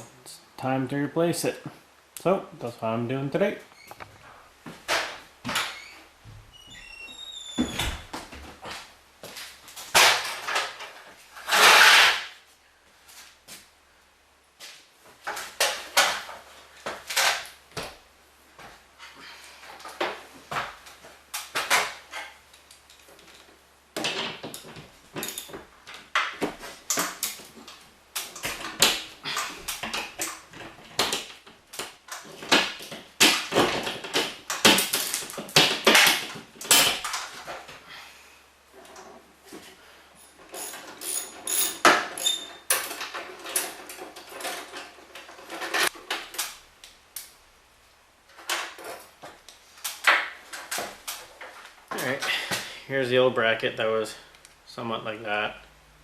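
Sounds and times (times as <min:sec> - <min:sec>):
metal parts clanking and rattling: 0:09.8 - 0:12.3, 0:21.4 - 0:31.5, 0:32.1 - 0:37.6, 0:40.2 - 0:46.5.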